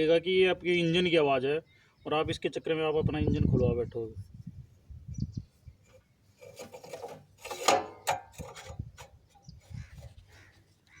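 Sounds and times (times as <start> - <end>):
scraping and rubbing: 5.8 - 10.8.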